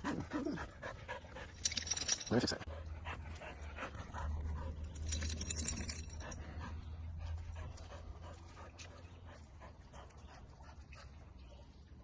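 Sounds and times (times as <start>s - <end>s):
dog panting: 0.0s - 1.8s, 2.5s - 11.3s.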